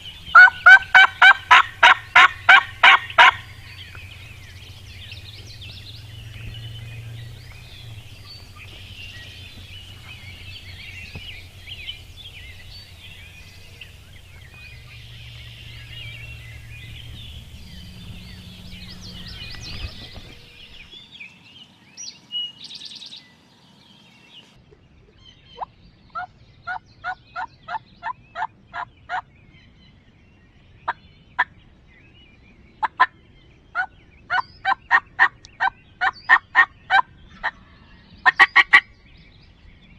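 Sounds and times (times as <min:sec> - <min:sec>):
turkey yelping: 0:00.0 - 0:20.8, 0:33.8 - 0:37.6
low steady hum: 0:00.0 - 0:26.7
songbirds chattering: 0:00.0 - 0:39.9.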